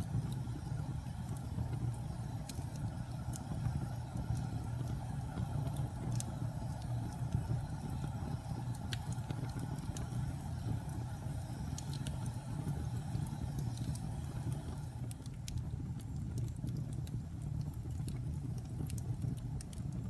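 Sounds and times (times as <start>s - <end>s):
fire crackles and pops: 0.0s - 20.0s
wood fire rumble: 0.0s - 20.0s.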